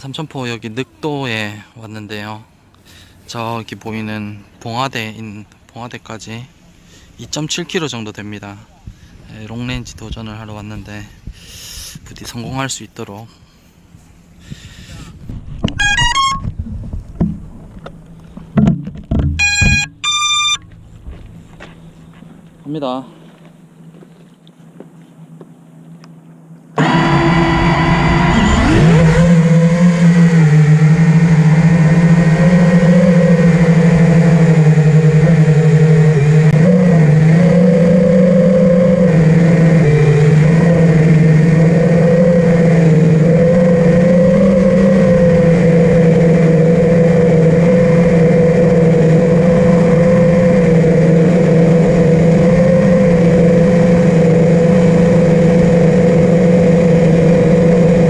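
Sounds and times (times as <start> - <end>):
drone motors whining: 14.6 - 22.6, 26.7 - 58.0.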